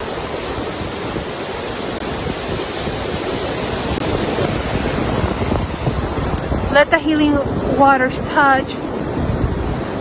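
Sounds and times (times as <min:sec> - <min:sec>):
ocean waves washing in: 0:00.0 - 0:10.0
wind buffeting microphone: 0:00.0 - 0:10.0.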